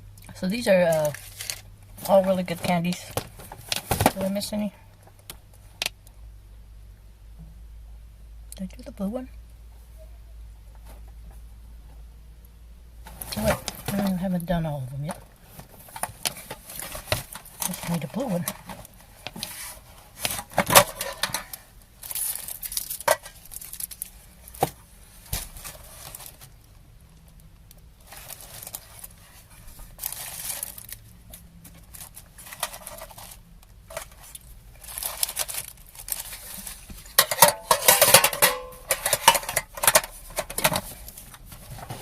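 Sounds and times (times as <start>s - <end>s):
candy wrappers crinkling: 20.4s - 24.6s, 25.5s - 41.3s.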